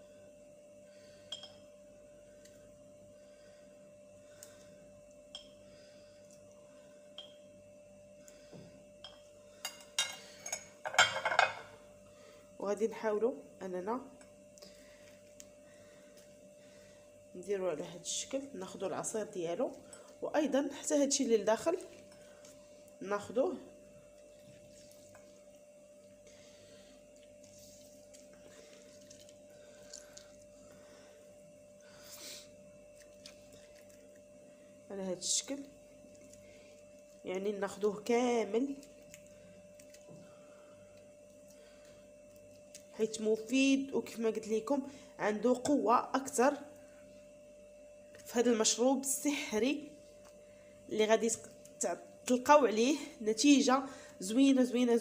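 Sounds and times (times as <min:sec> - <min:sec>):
faint steady hum: 0:00.0 - 0:55.0
drinking glass clinking: 0:01.3 - 0:01.6.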